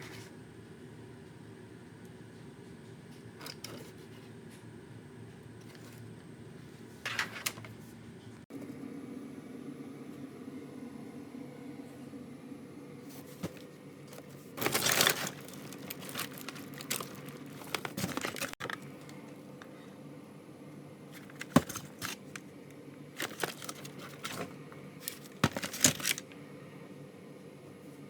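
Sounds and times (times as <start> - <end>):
crinkling and rustling: 13.0 - 19.4, 21.1 - 22.5, 23.1 - 26.4.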